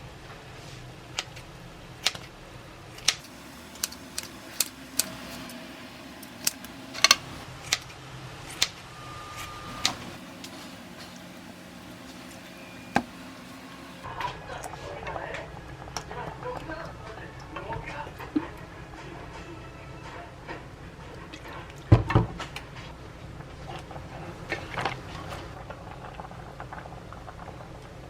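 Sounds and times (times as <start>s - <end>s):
steady low hum: 3.2s - 7.8s, 9.7s - 14.1s
kitchen utensils clinking: 3.2s - 7.9s, 9.7s - 14.1s.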